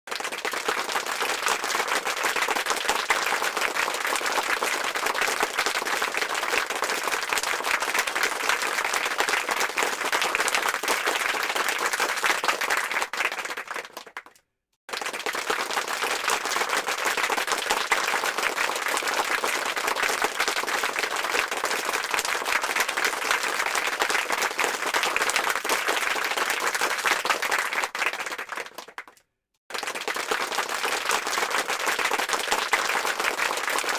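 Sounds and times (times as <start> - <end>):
crowd applauding: 0.1 - 33.9.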